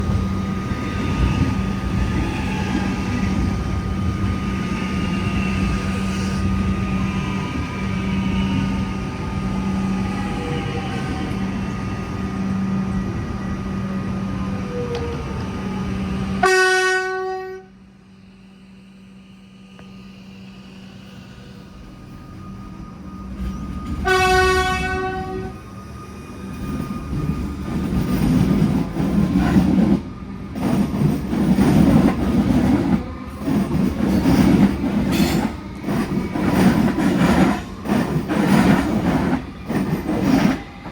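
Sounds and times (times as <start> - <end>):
train humming with sliding whines: 0.0 - 40.9
train rolling noise: 0.0 - 40.9
electric train horn blasts: 16.4 - 17.8, 24.0 - 25.6.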